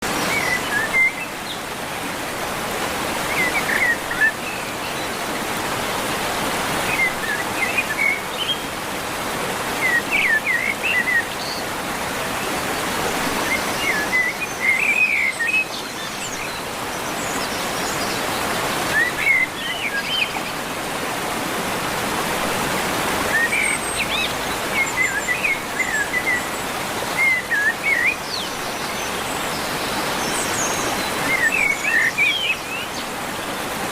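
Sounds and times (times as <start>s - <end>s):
birds chirping: 0.0s - 33.9s
waterfall rushing: 0.0s - 33.9s.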